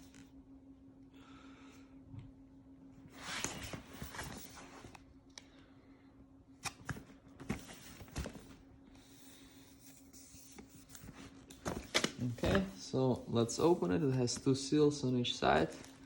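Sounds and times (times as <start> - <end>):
faint steady hum: 0.0 - 16.0
cardboard packaging rustling: 6.6 - 8.6.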